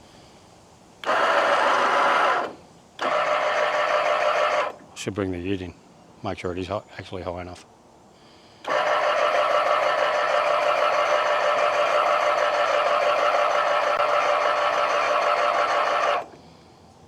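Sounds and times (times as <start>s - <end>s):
hydraulic pump motor whining: 1.0s - 4.9s, 8.6s - 16.6s.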